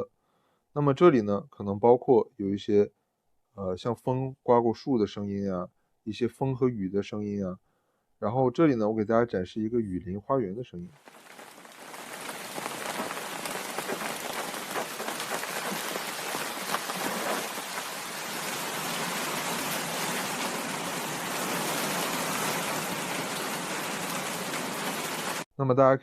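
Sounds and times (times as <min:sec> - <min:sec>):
raindrops pattering: 0:11.0 - 0:25.5
steady rainfall: 0:11.0 - 0:25.5.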